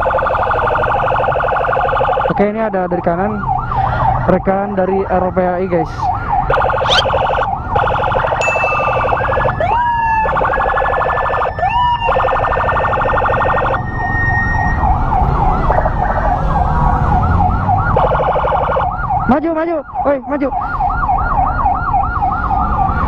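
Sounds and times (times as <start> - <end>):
emergency sirens: 0.0 - 23.0
road rumble: 0.0 - 23.0.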